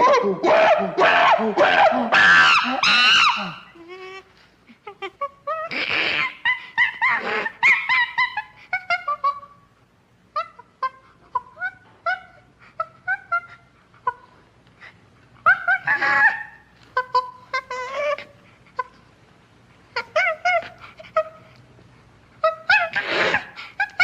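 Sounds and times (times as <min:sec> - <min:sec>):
chimpanzee screams: 0:00.0 - 0:03.9, 0:05.5 - 0:09.3, 0:15.5 - 0:18.3
chimpanzee hoots and squeals: 0:00.0 - 0:04.2, 0:05.0 - 0:09.6, 0:15.4 - 0:19.0, 0:22.4 - 0:24.0.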